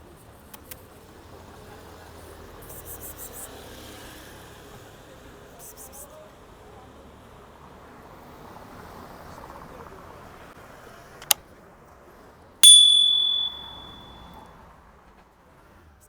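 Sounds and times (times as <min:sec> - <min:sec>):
bright metallic ding: 0:12.6 - 0:14.3.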